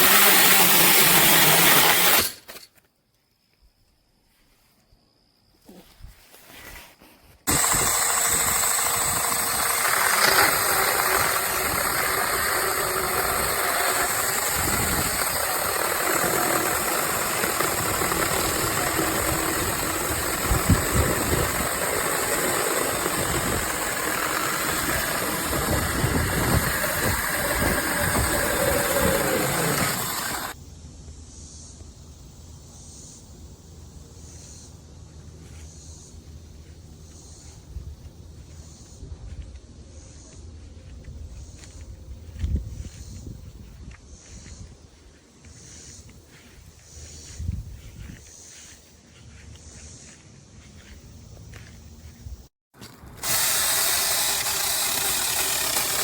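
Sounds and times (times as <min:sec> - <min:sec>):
electric chainsaw whine: 0:00.0 - 0:02.6, 0:07.5 - 0:30.6, 0:52.8 - 0:56.0.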